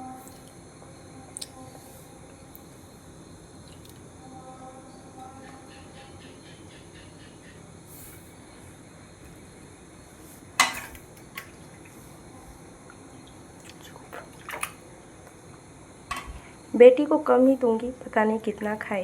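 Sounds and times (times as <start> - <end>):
utensils clinking against dishware: 10.6 - 11.5.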